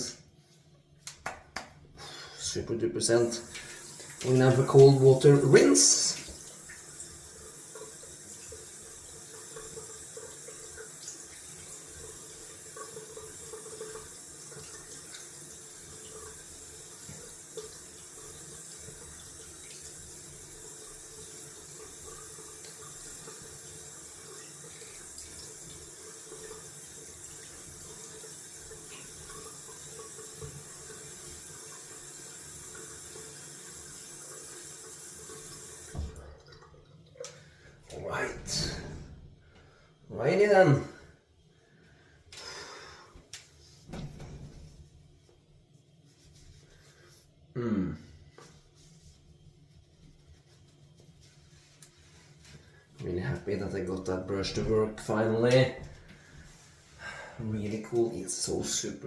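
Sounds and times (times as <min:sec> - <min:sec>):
tap running into sink: 0:34.7 - 0:36.6.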